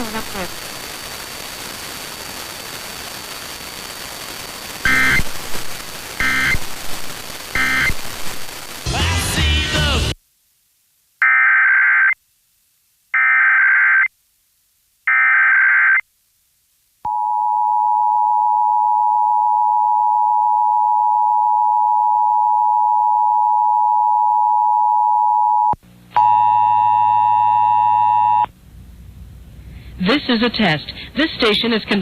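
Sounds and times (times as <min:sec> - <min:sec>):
harsh buzzing tone: 0:04.6 - 0:10.2
warbling data bursts: 0:04.8 - 0:09.8.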